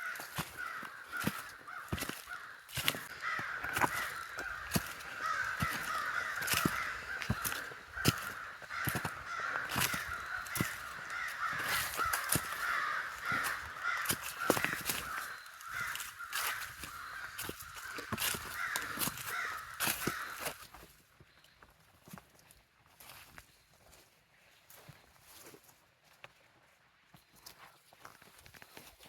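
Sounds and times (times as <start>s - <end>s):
crows cawing: 0.0s - 20.9s.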